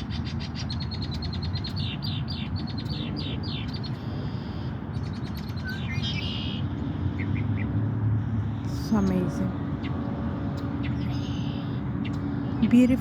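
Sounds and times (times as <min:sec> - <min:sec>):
buzzy bird trill: 0:00.0 - 0:06.7, 0:10.8 - 0:12.8
songbirds chirping: 0:00.0 - 0:13.0
low rumble: 0:06.7 - 0:13.0.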